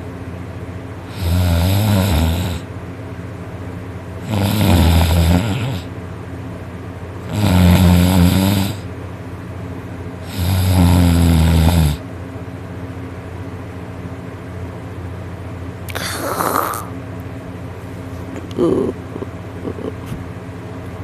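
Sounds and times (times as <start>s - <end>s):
faint steady hum: 0.0s - 21.0s
man snoring loudly: 1.0s - 2.7s, 4.2s - 5.9s, 7.2s - 8.9s, 10.2s - 12.0s, 15.9s - 16.9s.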